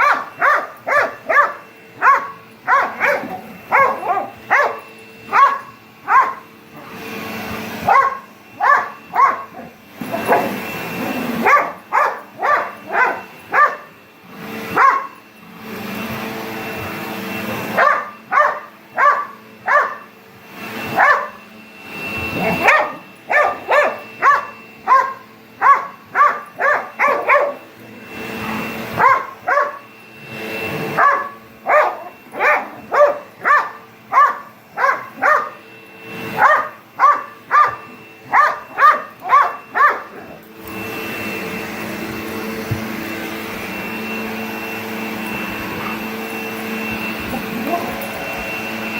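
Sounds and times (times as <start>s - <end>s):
dog barking: 0.0s - 6.5s, 7.8s - 10.6s, 11.3s - 13.9s, 14.7s - 15.2s, 17.7s - 20.1s, 20.9s - 21.4s, 22.4s - 27.7s, 28.9s - 29.9s, 30.9s - 35.6s, 36.3s - 40.4s
vacuum cleaner whine: 0.0s - 48.9s.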